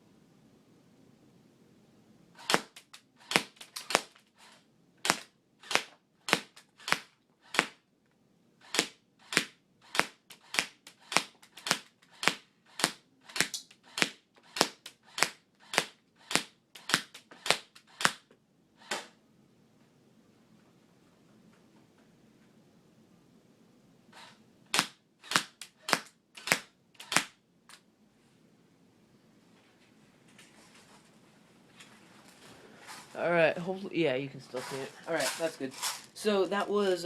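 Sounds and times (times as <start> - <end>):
airsoft gun shots: 2.4 - 4.2, 5.0 - 7.8, 8.7 - 19.2, 24.7 - 27.4.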